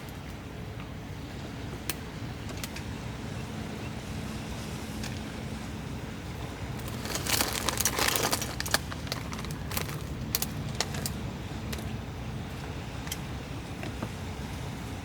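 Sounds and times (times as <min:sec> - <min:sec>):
crinkling rustle: 0:06.7 - 0:11.2.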